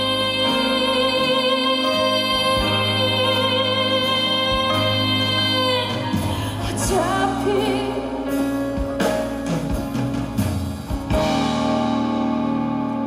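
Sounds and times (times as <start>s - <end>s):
woman singing: 0.0s - 8.9s
live band music: 0.0s - 13.0s
drum strikes: 8.7s - 12.8s.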